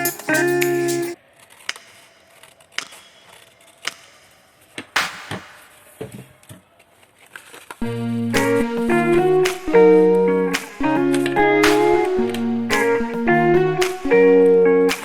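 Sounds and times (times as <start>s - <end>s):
guitar music: 7.8s - 15.0s.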